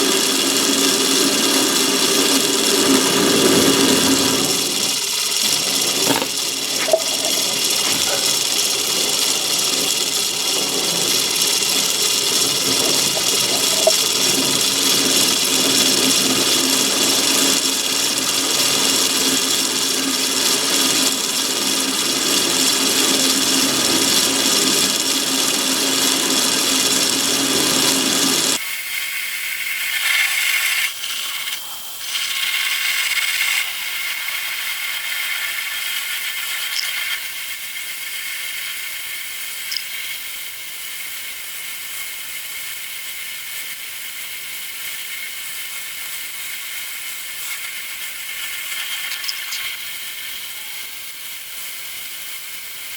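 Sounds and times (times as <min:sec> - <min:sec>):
lathe running: 0:00.0 - 0:28.6
parting tool cutting steel: 0:05.4 - 0:08.5.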